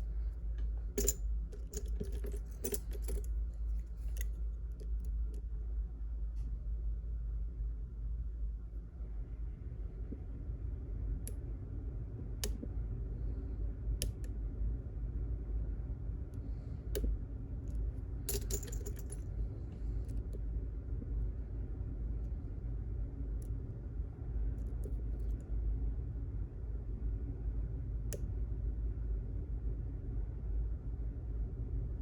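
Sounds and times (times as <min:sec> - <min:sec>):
steady low hum: 0:00.0 - 0:32.0
lock picks clicking in lock: 0:01.0 - 0:03.3.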